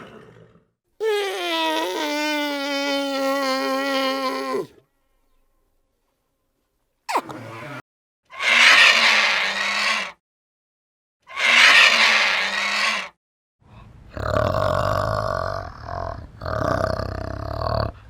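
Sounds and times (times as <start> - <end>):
harsh animal calls: 1.0 - 4.7, 7.1 - 10.2, 11.3 - 13.2.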